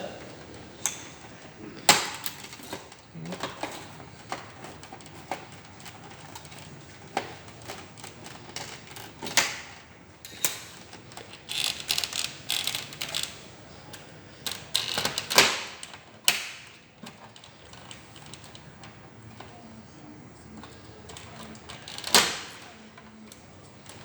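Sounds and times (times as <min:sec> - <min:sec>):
plastic latches snapping: 0:00.8 - 0:18.5, 0:20.6 - 0:23.4.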